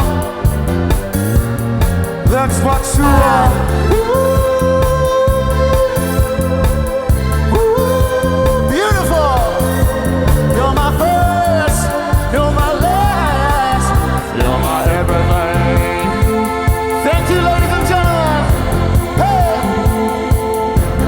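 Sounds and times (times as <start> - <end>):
soul music with steady beat: 0.0 - 21.0
man singing wordless vocal runs: 2.4 - 6.3.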